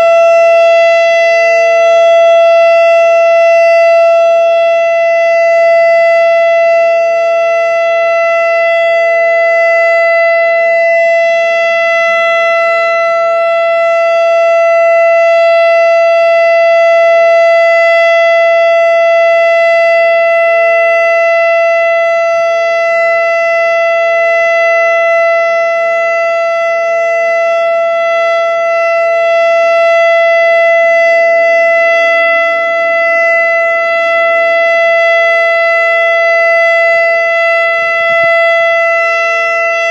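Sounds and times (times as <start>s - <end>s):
electronic warning siren: 0.0s - 39.9s
lower wavering tone: 36.4s - 39.9s.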